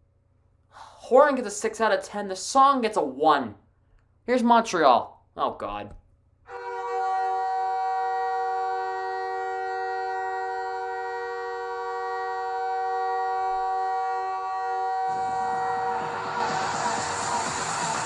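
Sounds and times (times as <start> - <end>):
goal horn blast: 6.5 - 18.0.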